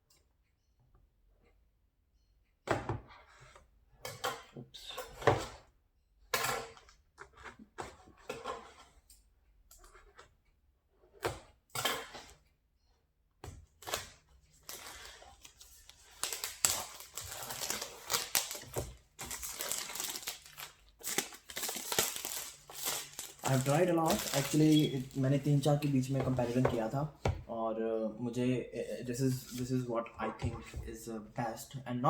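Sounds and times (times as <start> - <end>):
packaging tearing and crinkling: 14.6 - 25.4.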